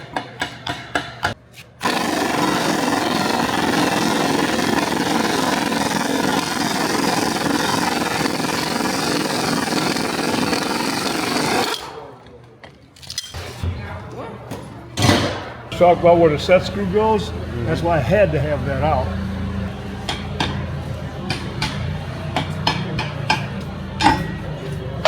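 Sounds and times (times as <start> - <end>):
power tool running: 1.8 - 12.0.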